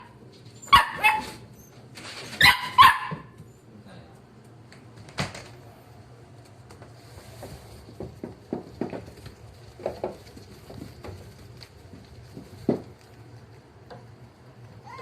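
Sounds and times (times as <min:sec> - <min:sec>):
puppy barking in high yaps: 0:00.0 - 0:01.4, 0:02.4 - 0:03.4.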